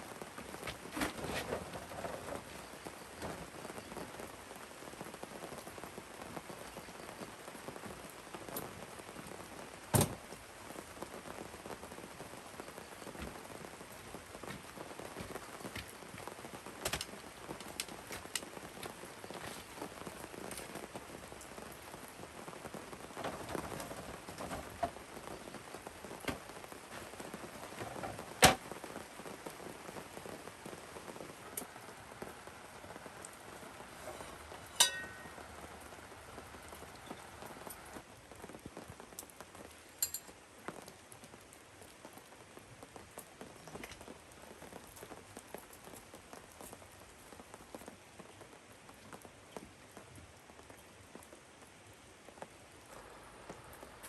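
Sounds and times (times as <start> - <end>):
steady rain falling: 0.0 - 54.0.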